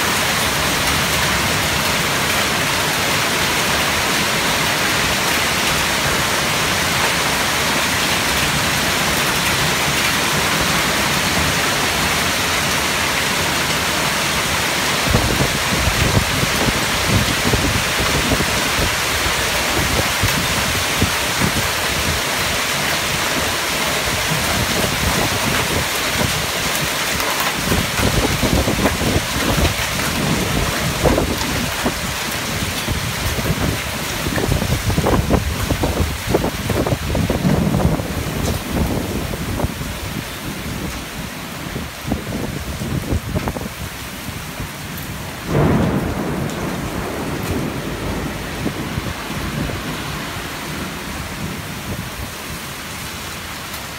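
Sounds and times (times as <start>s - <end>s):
heavy rain pouring: 0.0s - 53.9s
low rumbles: 45.4s - 52.4s.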